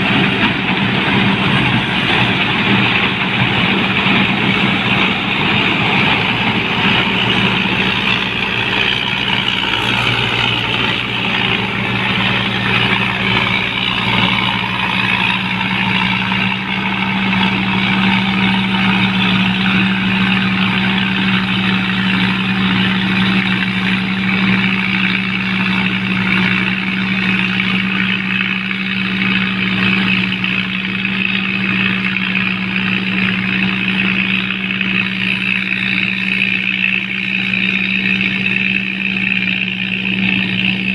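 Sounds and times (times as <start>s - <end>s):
combine harvester engine: 0.0s - 40.9s
high mechanical whirr: 0.0s - 40.9s.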